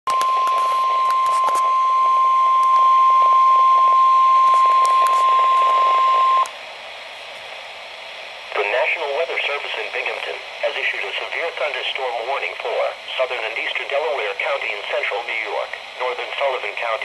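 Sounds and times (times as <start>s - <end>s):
steady high alarm tone: 0.1s - 6.5s
radio static hiss: 0.1s - 17.0s.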